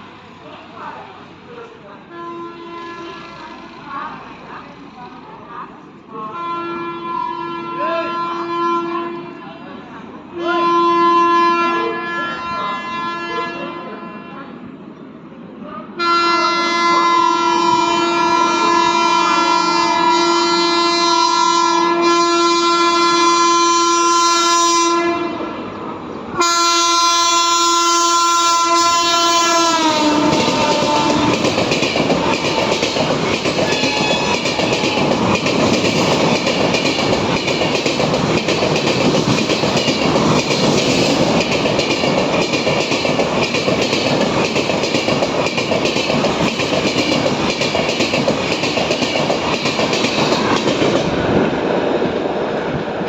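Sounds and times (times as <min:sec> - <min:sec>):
train coaches rumbling: 0:00.0 - 0:53.0
locomotive air horn: 0:02.1 - 0:03.6, 0:06.3 - 0:09.5, 0:10.4 - 0:14.5, 0:16.0 - 0:25.5, 0:26.4 - 0:31.4, 0:33.7 - 0:34.9.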